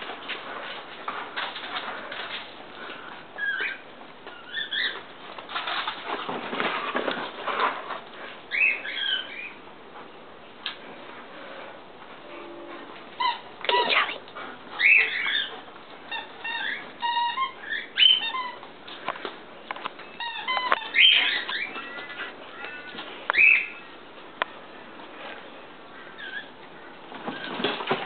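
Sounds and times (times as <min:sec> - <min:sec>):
dog yelping and whining: 0:14.8 - 0:18.7.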